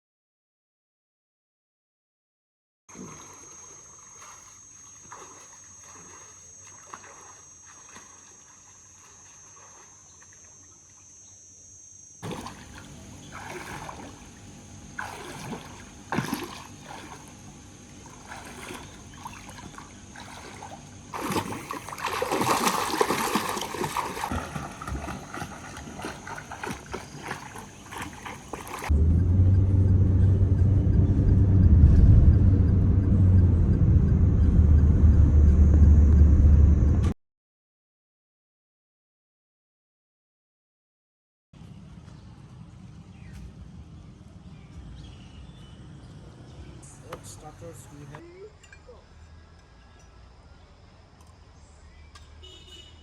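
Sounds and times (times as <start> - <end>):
water splashing and trickling: 2.9 - 10.8, 12.2 - 28.9
steady high whine: 12.5 - 37.1.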